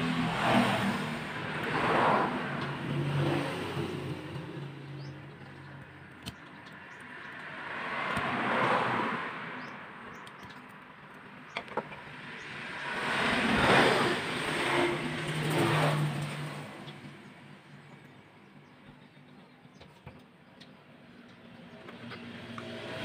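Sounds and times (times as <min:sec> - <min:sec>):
road vehicles passing: 0:00.0 - 0:23.0
sharp clicks: 0:05.4 - 0:08.4.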